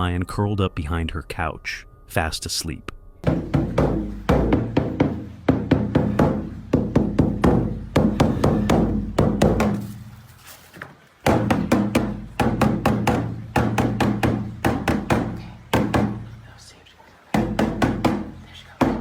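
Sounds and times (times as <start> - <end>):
background music with percussive beat: 3.2 - 10.0, 11.2 - 16.2.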